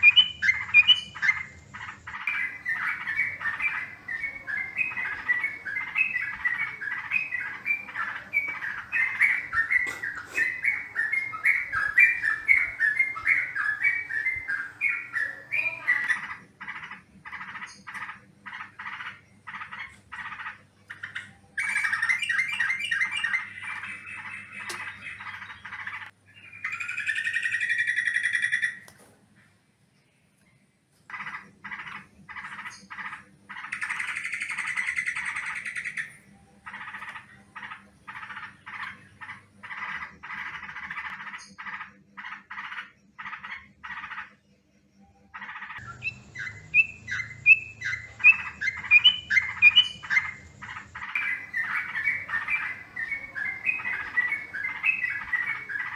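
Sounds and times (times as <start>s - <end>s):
bulbul chattering calls: 0.0s - 28.8s, 31.1s - 44.4s, 45.4s - 55.9s
bubbling bird notes: 2.3s - 16.1s, 51.1s - 55.9s.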